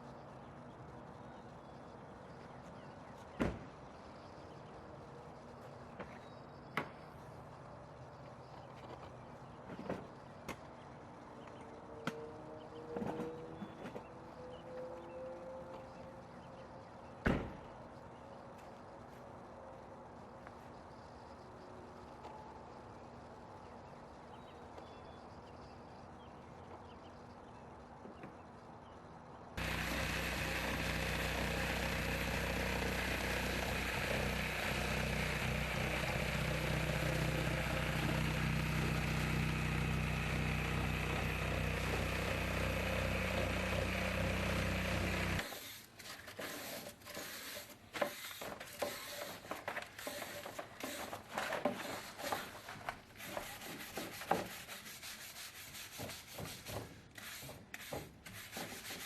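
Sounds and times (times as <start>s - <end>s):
electric motor running: 29.6s - 45.5s.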